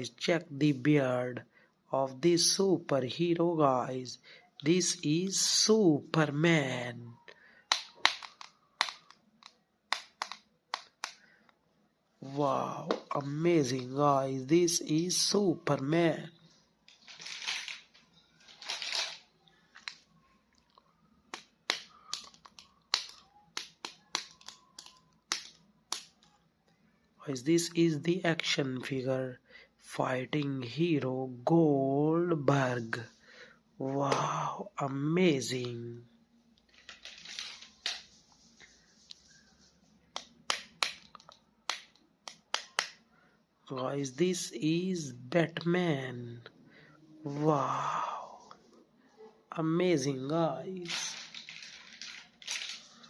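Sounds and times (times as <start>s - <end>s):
plastic clicks and taps: 7.7s - 11.2s
plastic packaging rustling: 16.8s - 20.0s, 36.7s - 39.0s, 50.8s - 53.0s.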